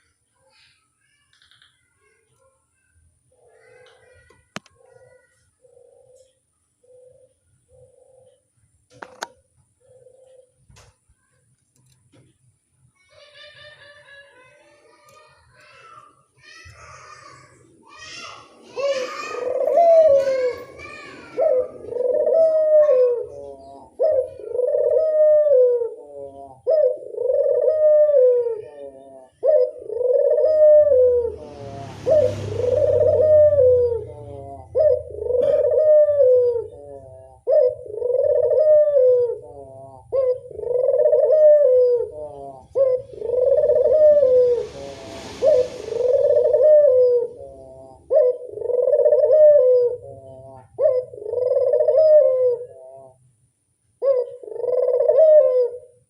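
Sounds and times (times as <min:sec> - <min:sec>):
dove cooing: 0:04.8 - 0:10.8, 0:18.7 - 0:53.4, 0:54.0 - 0:56.0
brief hiss: 0:44.0 - 0:47.6.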